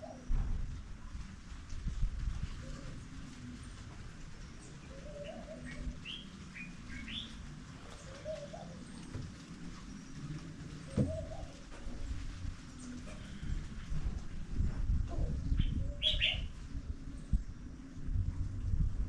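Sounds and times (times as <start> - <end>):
low wavering bird calls: 2.6 - 13.9, 15.2 - 18.0
birds chirping: 2.8 - 13.8, 15.4 - 17.7.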